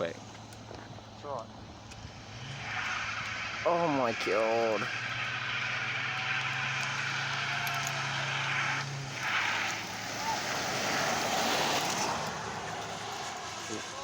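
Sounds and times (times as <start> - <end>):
car engine low drone: 0.0 - 14.0.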